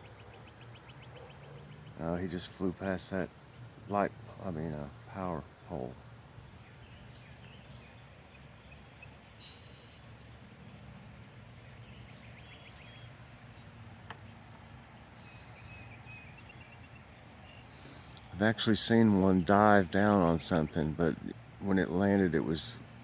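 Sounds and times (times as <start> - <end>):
songbird chirping: 0.0 - 22.9
faint click: 14.0 - 14.3.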